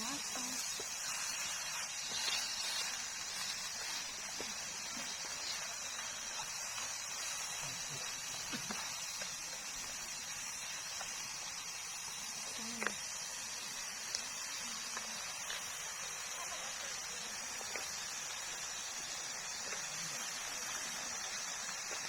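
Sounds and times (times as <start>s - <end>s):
high-pitched hiss: 0.0s - 22.0s.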